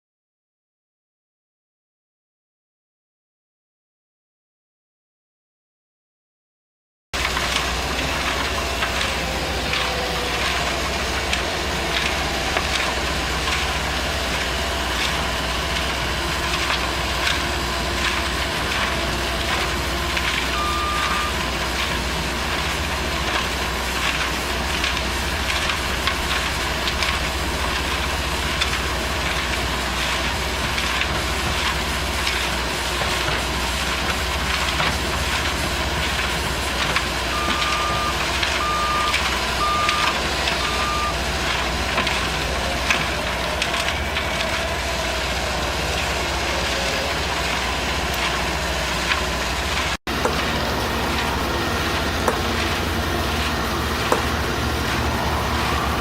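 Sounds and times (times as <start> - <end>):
screening plant engine drone: 7.2 - 56.0
short beep: 20.5 - 21.4, 37.3 - 41.2.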